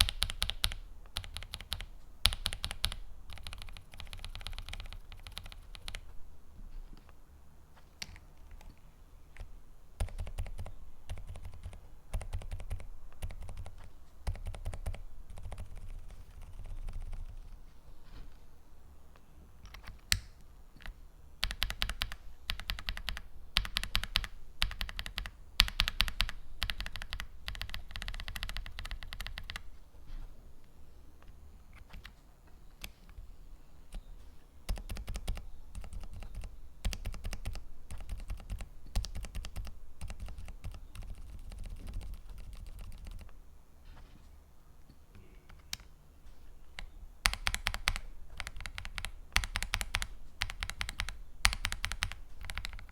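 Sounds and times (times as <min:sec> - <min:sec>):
mechanical keyboard typing: 0:00.0 - 0:06.1, 0:08.0 - 0:17.5, 0:19.6 - 0:29.7, 0:31.7 - 0:32.2, 0:34.7 - 0:43.4, 0:46.8 - 0:52.9.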